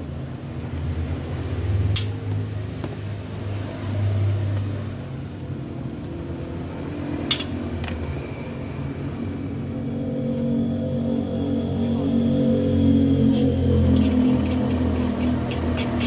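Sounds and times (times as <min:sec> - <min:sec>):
steady low rumble: 0:08.0 - 0:16.0.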